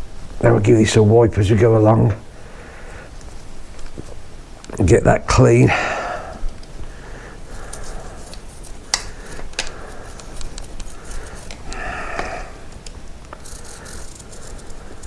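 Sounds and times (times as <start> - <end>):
sharp clicks of chain links: 13.3 - 15.0.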